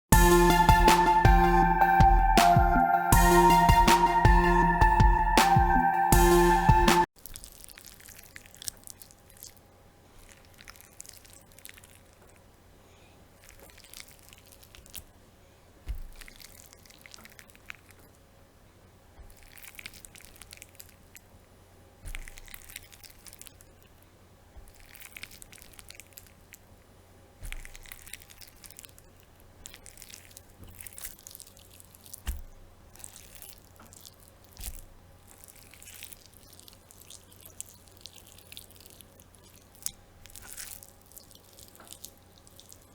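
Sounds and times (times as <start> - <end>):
wet flesh squelching: 7.2 - 12.5, 13.2 - 15.2, 15.8 - 18.2, 19.2 - 21.4, 22.0 - 26.7, 27.4 - 42.9.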